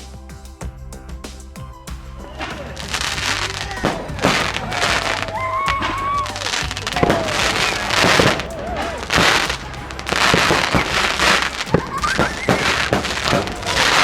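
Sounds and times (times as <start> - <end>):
fireworks crackling and popping: 0.0 - 14.0
fireworks rushing hiss: 1.3 - 14.0.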